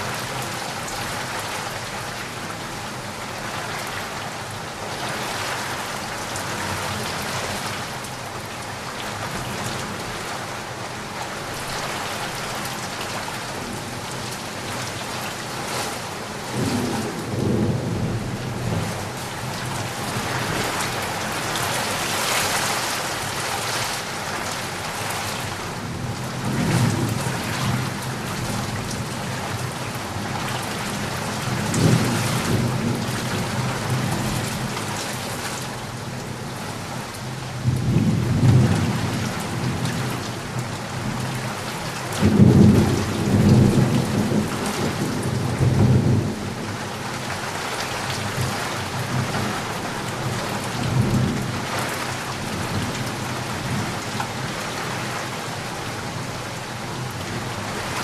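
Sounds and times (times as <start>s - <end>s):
heavy rain falling: 0.0s - 58.0s.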